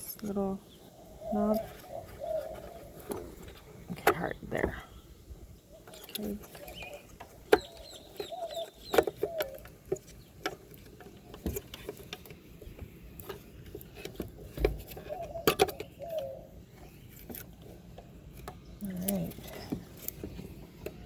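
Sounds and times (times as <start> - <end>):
plastic clicks and knocks: 5.9 - 16.2.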